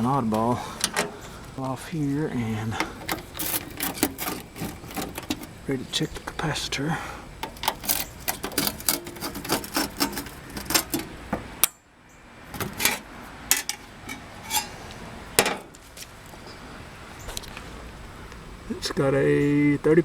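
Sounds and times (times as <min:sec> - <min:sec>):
hand tools clicking and clanking: 0:00.0 - 0:06.5, 0:07.4 - 0:11.8, 0:12.5 - 0:15.8.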